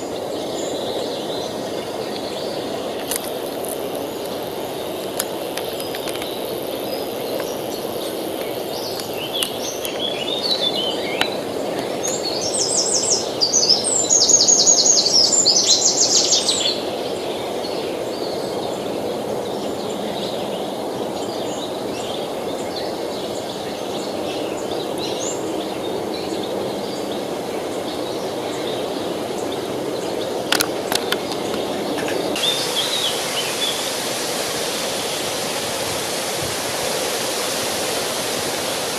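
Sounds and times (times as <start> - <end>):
river flowing: 0.0 - 14.4, 27.4 - 38.9
songbirds singing: 0.0 - 36.2
sharp clicks: 30.5 - 32.5.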